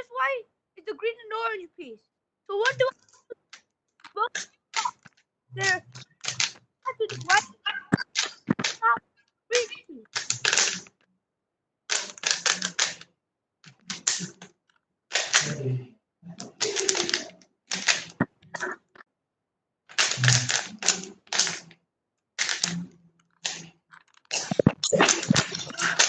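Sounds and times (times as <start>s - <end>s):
puzzle cube plastic clicking: 2.6s - 11.0s, 11.9s - 13.1s, 13.7s - 15.6s, 16.3s - 18.7s, 19.9s - 21.8s, 22.4s - 26.0s.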